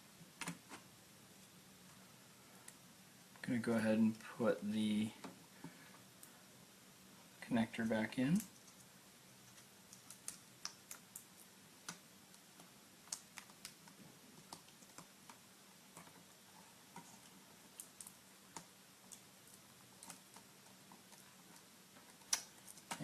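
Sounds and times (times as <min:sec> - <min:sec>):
fingers clicking and tapping on laptop: 0:08.4 - 0:23.0.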